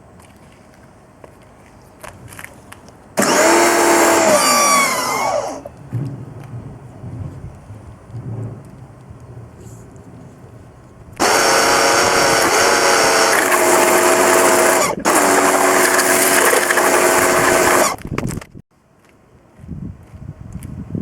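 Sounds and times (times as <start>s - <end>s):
pressure washer spraying: 3.2s - 5.7s, 11.2s - 18.0s.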